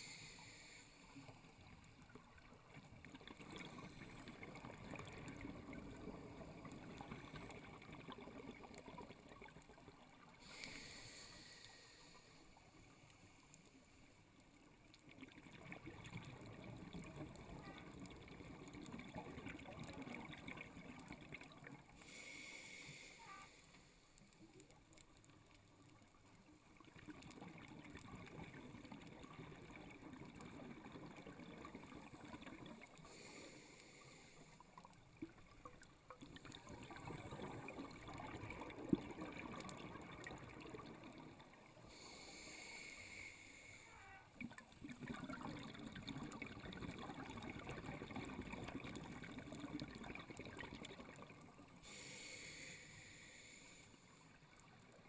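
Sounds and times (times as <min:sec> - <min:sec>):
regulator inhalation hiss: 0:00.0 - 0:01.4, 0:10.4 - 0:12.6, 0:22.0 - 0:24.1, 0:41.9 - 0:43.9, 0:51.8 - 0:54.2
underwater exhaled bubbling: 0:00.0 - 0:12.8, 0:15.1 - 0:23.4, 0:26.8 - 0:55.0.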